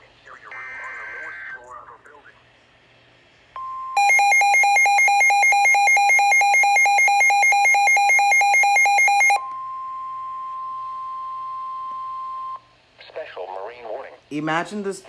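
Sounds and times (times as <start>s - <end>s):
rapid loud alert beeping: 0.5s - 1.5s, 3.7s - 9.4s
steady alarm tone: 0.5s - 1.5s, 3.6s - 12.6s.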